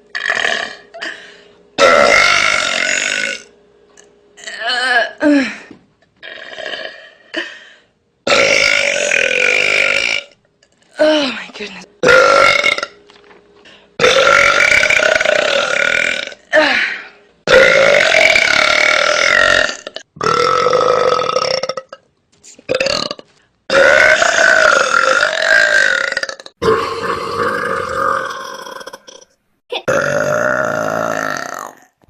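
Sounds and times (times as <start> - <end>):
woman belching loudly: 0.2 - 0.8, 1.8 - 3.4, 8.3 - 10.3, 12.0 - 13.0, 14.0 - 16.4, 17.5 - 22.0, 22.7 - 29.2, 29.8 - 32.0.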